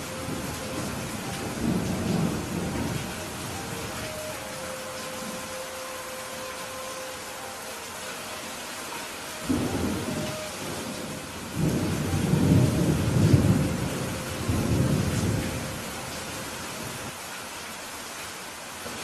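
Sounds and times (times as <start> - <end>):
thunder rumbling: 0.0 - 4.1, 9.4 - 17.1
steady rain falling: 0.0 - 19.0.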